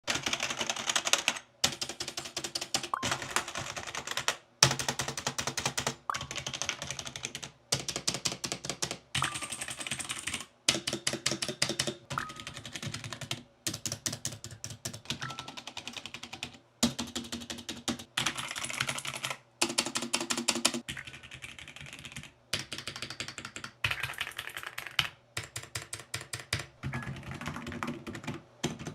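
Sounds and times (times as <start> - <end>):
rapid keyboard typing: 0.0 - 28.9.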